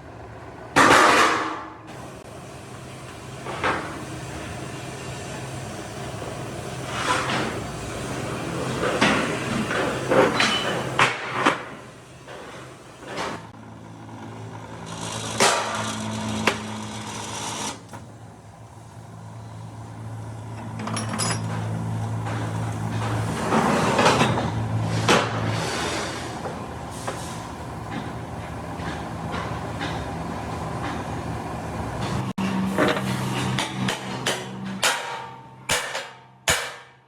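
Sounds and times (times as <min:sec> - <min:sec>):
sharp metal knocks and clanks: 0:32.8 - 0:37.0.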